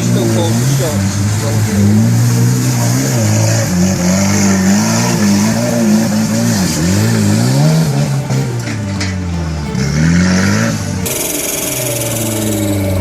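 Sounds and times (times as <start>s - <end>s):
off-road vehicle engine revving: 0.0s - 13.0s.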